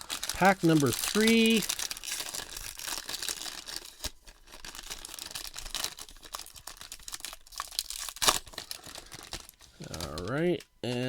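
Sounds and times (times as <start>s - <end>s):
wrapper crinkling and tearing: 0.0s - 10.7s.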